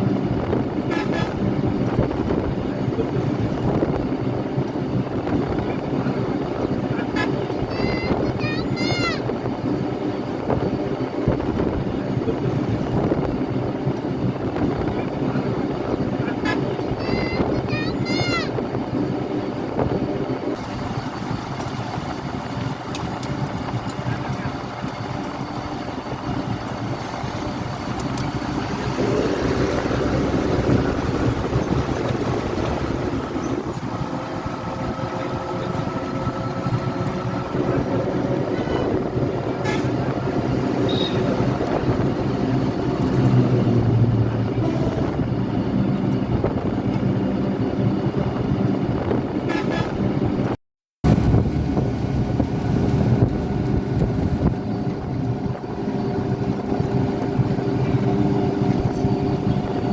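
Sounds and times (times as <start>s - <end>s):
cars and trucks passing: 0.0s - 50.4s, 51.0s - 59.9s
vehicle horns tooting: 38.4s - 41.6s, 44.6s - 45.2s, 49.5s - 50.0s.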